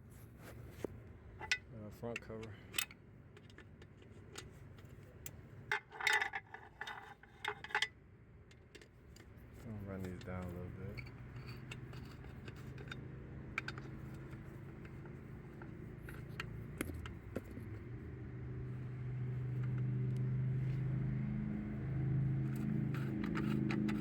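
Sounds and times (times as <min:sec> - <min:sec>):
low engine-like hum: 0:08.1 - 0:24.0.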